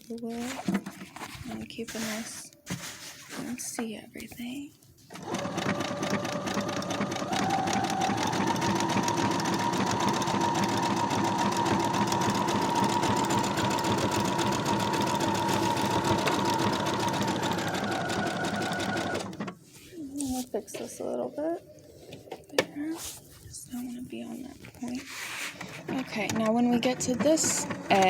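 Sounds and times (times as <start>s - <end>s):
sewing machine running: 5.1s - 19.5s, 26.1s - 28.0s.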